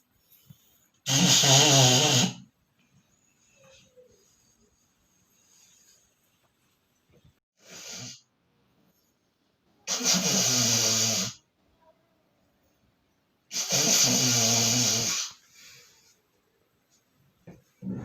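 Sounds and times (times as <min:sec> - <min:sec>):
person snoring loudly: 0:01.1 - 0:02.4, 0:13.5 - 0:15.4.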